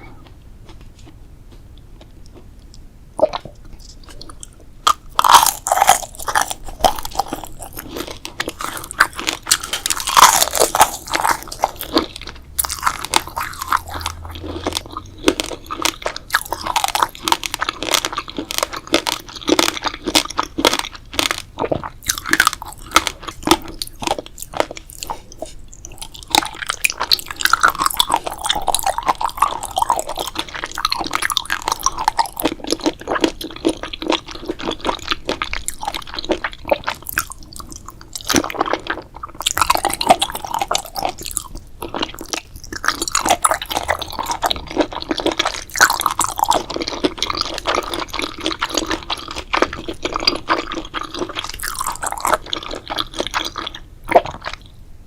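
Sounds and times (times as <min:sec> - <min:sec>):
person chewing crunchy food: 0:00.0 - 0:54.8.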